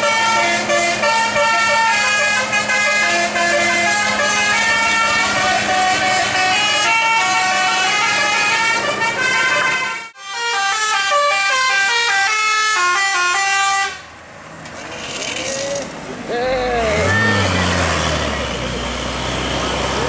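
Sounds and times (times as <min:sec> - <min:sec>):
musical air horn melody: 0:00.0 - 0:14.0.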